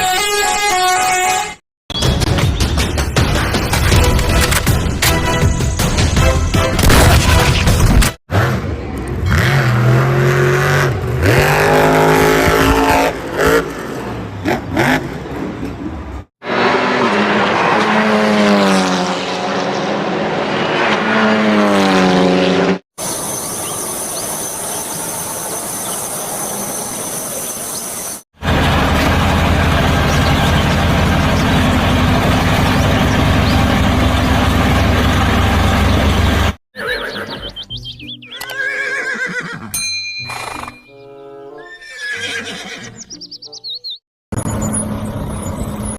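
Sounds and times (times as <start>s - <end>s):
race car engine: 8.3s - 22.8s, 28.4s - 36.6s
horse neighing: 36.8s - 37.6s, 38.4s - 40.8s, 41.6s - 43.0s.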